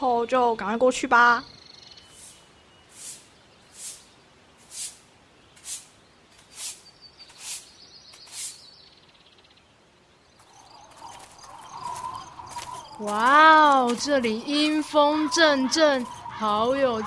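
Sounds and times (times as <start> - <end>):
faint bird chirps: 0.0 - 17.0
eerie ambient tone: 10.4 - 17.0
footsteps walking: 10.4 - 17.0.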